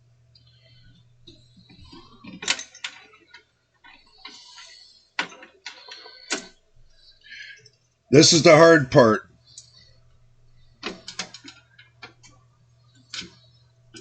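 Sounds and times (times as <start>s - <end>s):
computer parts clicking: 10.7s - 14.0s.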